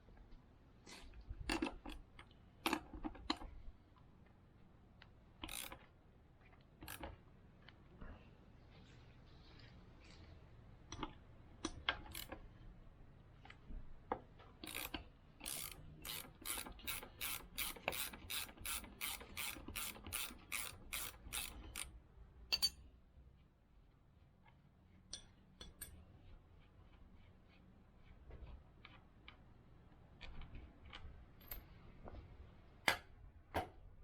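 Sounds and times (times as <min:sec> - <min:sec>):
ratchet wrench clicking: 0:05.4 - 0:05.9, 0:06.8 - 0:07.1, 0:12.0 - 0:12.4, 0:14.6 - 0:21.9
tool clicks and knocks: 0:32.8 - 0:33.8.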